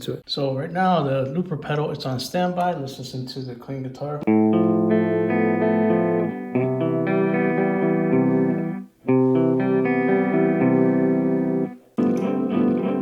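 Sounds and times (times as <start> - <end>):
clean electric guitar chords: 4.3 - 13.0.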